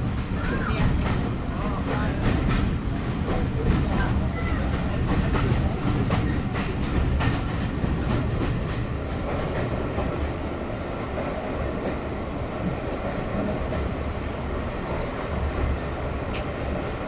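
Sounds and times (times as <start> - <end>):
train rumbling on track: 0.0 - 17.0
wheels clicking over rails: 1.9 - 10.2.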